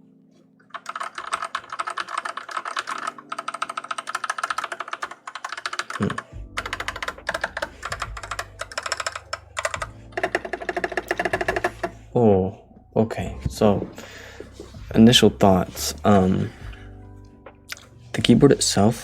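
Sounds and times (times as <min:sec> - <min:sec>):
mechanical keyboard typing: 0:00.7 - 0:12.0.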